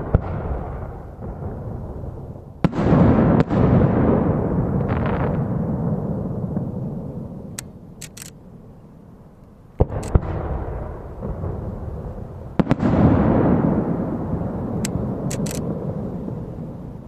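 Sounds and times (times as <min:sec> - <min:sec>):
firework shells bursting: 0:14.8 - 0:15.8.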